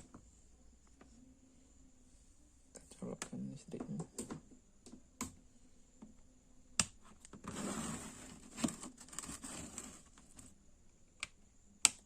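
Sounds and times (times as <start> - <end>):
cord rustling: 7.4 - 10.5.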